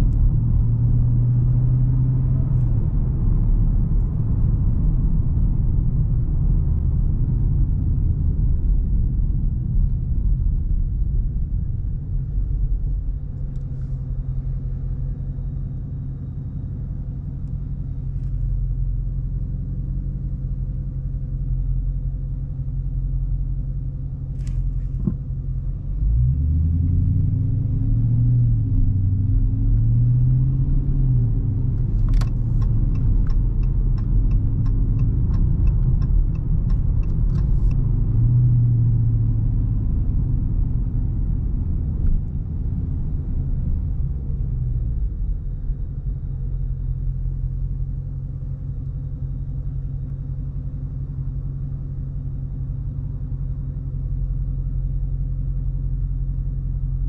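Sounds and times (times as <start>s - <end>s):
even ticks: 32.2s - 37.6s.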